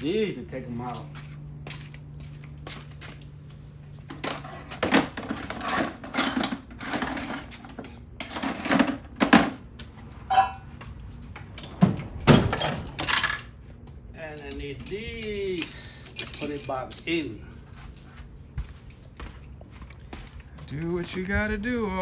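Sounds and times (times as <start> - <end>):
steady low hum: 0.0 - 22.0
short squeak: 10.3 - 10.7
metal hand tools clinking: 11.5 - 13.5, 14.2 - 17.4.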